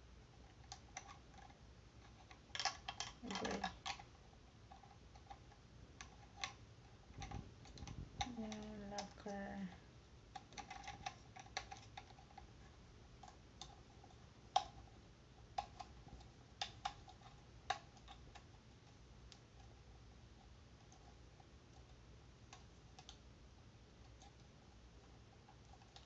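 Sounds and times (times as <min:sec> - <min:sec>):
plastic clicks and light knocks: 0:05.1 - 0:09.3.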